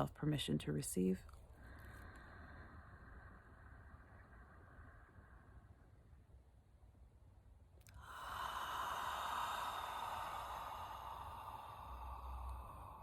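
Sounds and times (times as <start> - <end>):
woman breathing deeply: 1.4 - 6.3, 7.8 - 13.0.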